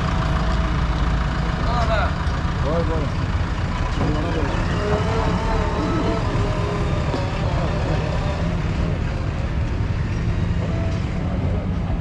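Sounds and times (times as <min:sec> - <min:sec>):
diesel engine rumbling: 0:00.0 - 0:12.0.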